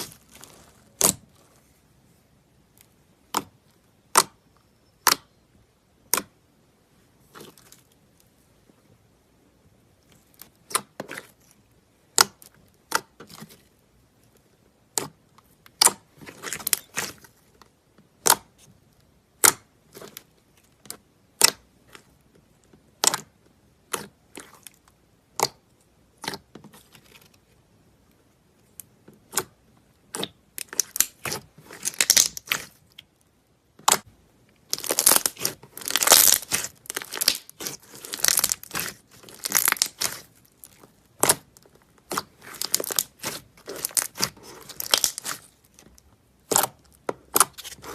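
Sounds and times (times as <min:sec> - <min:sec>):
slime crackling: 0:00.0 - 0:01.6, 0:14.4 - 0:17.5, 0:29.2 - 0:33.1, 0:33.7 - 0:47.9.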